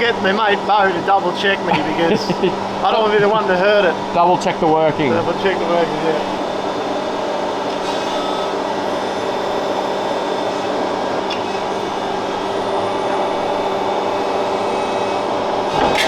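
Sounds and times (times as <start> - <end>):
machine hum and drone: 0.0 - 16.0.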